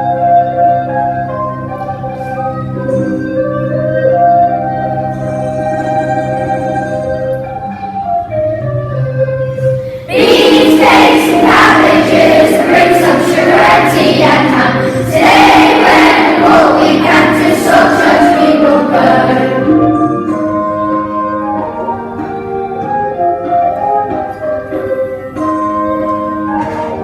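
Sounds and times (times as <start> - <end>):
instrumental backing music: 0.0 - 27.0
choir singing: 9.9 - 20.4.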